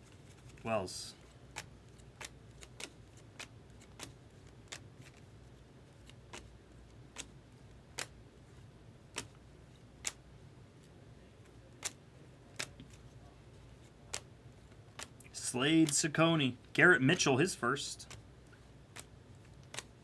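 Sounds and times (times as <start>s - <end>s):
trading cards clicking: 14.9s - 16.2s.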